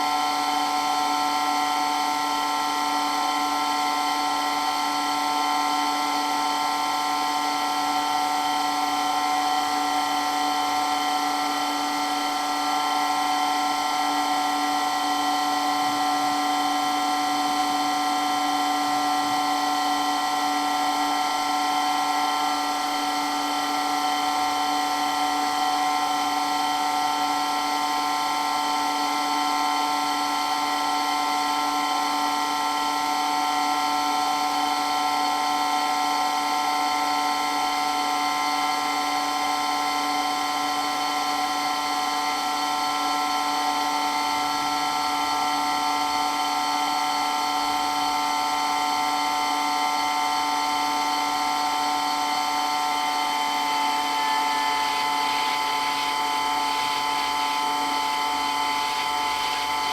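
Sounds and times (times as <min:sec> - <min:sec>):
water pump whining: 0:47.1 - 0:59.9.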